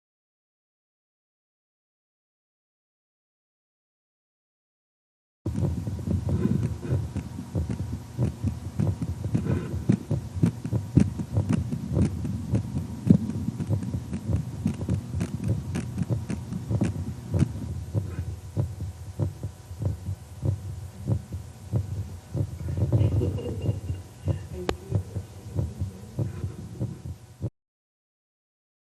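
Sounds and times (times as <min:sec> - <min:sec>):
amplified heartbeat thumps: 0:05.5 - 0:27.5.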